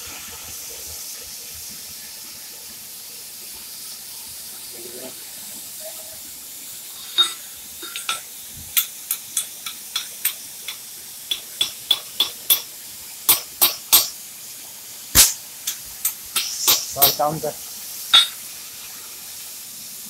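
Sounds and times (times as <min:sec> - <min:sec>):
steady hiss: 0:00.0 - 0:20.0
sharp clinks and taps: 0:08.8 - 0:12.7, 0:18.1 - 0:18.4.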